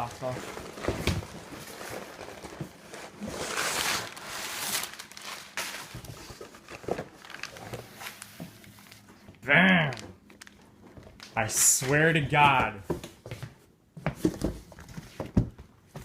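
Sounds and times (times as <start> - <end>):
cardboard scraping and crinkling: 0.0 - 9.1.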